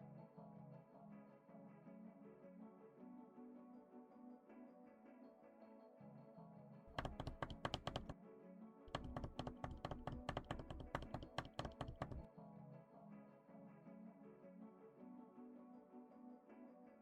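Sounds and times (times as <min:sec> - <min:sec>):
background music: 0:00.0 - 0:17.0
rapid clicking: 0:06.9 - 0:08.2, 0:08.9 - 0:12.3.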